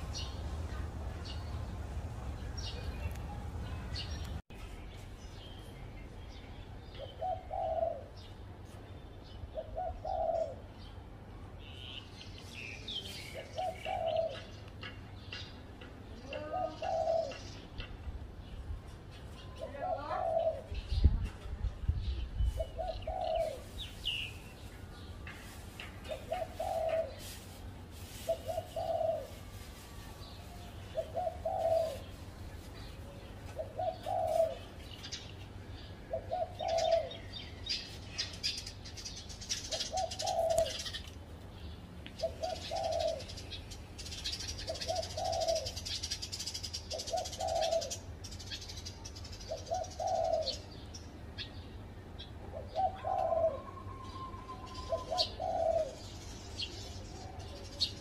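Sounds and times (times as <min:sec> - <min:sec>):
small birds chirping: 0:00.0 - 0:58.0
dove cooing: 0:07.0 - 0:08.2, 0:09.6 - 0:10.7, 0:13.3 - 0:14.5, 0:16.3 - 0:17.5, 0:19.6 - 0:20.8, 0:22.5 - 0:23.8, 0:26.1 - 0:27.4, 0:28.1 - 0:29.5, 0:30.9 - 0:32.2, 0:33.5 - 0:34.8, 0:36.1 - 0:37.3, 0:39.6 - 0:41.0, 0:42.2 - 0:43.5, 0:44.1 - 0:48.0, 0:49.4 - 0:50.8, 0:52.5 - 0:56.1.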